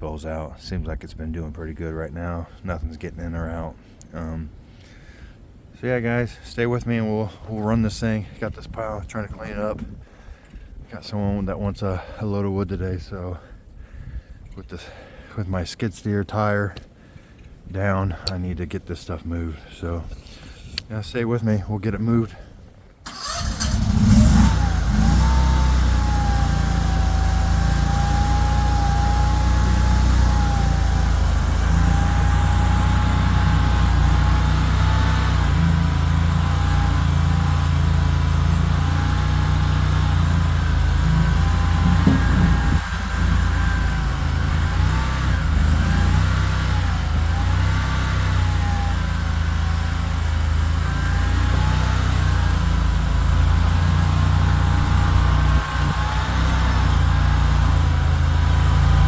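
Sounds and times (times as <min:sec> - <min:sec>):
skid steer engine running: 0:23.1 - 0:59.0
wavering whine: 0:24.8 - 0:46.2.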